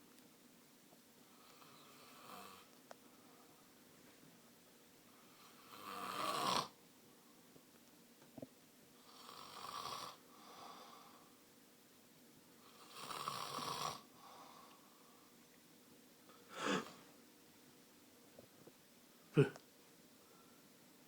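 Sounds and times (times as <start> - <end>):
man snoring: 5.5 - 6.7, 12.9 - 14.0.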